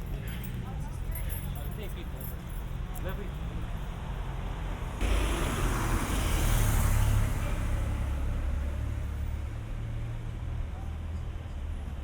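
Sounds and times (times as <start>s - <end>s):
low traffic rumble: 0.0s - 12.0s
car passing by: 4.5s - 9.9s.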